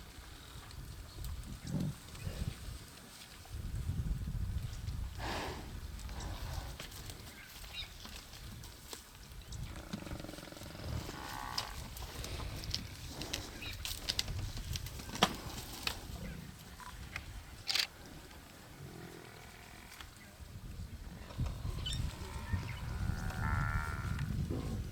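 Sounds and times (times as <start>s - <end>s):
lions growling and snarling: 9.7s - 13.7s.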